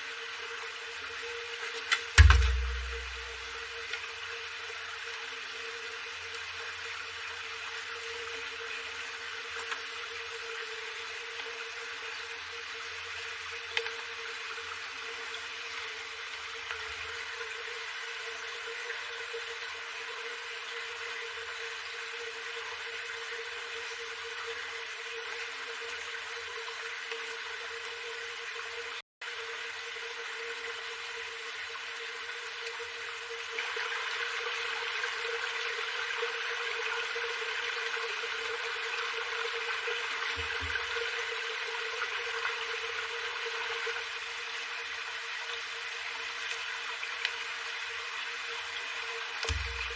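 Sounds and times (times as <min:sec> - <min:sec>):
running water rushing: 0:01.5 - 0:03.8, 0:49.4 - 0:49.9
soft low thump: 0:02.2 - 0:03.4, 0:49.5 - 0:49.9
faint steady hum: 0:49.4 - 0:49.9.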